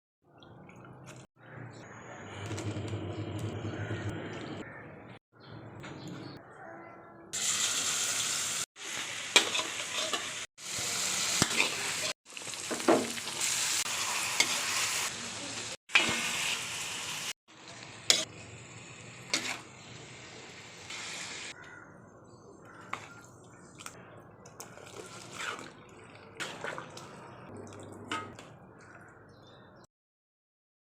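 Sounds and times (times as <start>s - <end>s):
food sizzling in hot oil: 7.4s - 21.6s
metal utensil scraping pan: 9.3s - 10.5s, 18.1s - 18.4s, 19.3s - 19.7s.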